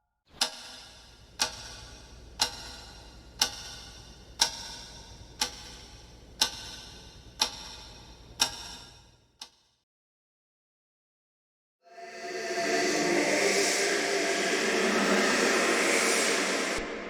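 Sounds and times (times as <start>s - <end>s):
clock ticking: 0.4s - 9.6s.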